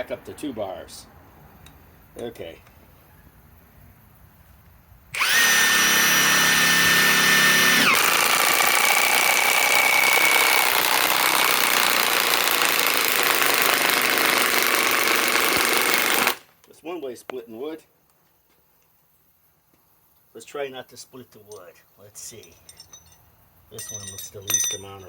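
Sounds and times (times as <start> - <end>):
impact wrench hammering: 5.2 - 16.4
wood splitting: 5.2 - 16.6.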